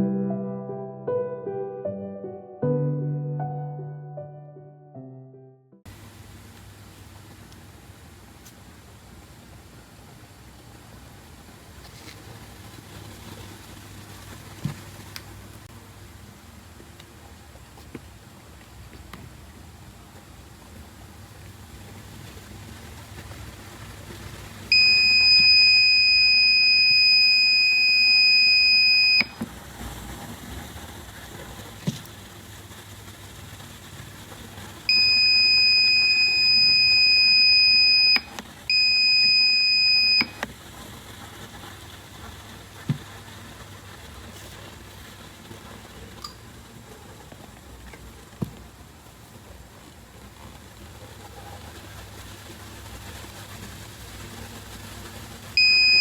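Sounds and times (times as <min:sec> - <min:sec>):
alarm buzzer high-pitched tone: 0:24.7 - 0:29.3, 0:34.9 - 0:40.4, 0:55.6 - 0:56.0.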